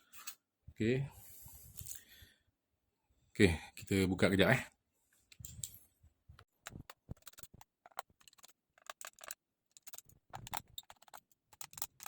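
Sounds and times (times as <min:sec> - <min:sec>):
screwdriver clicking on screws: 0:06.6 - 0:12.0.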